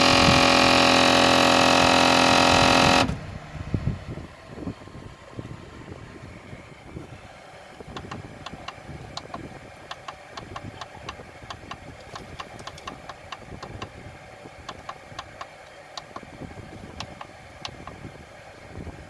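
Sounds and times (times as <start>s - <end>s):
mechanical hum: 0.0s - 19.0s
printer drive clicking: 7.9s - 13.9s, 14.6s - 18.0s.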